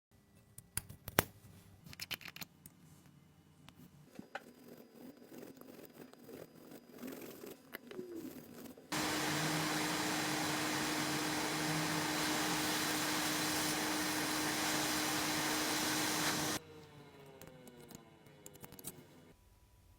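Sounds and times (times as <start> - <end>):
hot-air station blowing hiss: 8.9 - 16.6.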